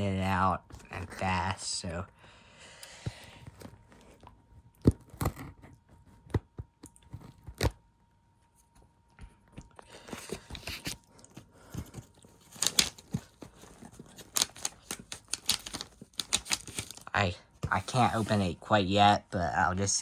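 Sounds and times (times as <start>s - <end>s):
paper crinkling and tearing: 10.0s - 18.6s.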